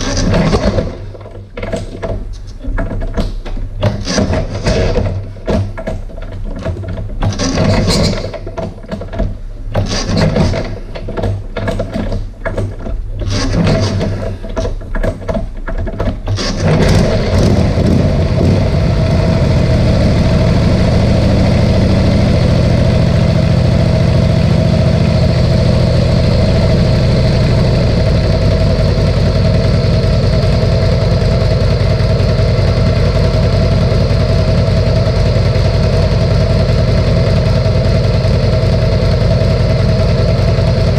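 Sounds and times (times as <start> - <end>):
motorcycle engine idling: 16.9 - 40.9.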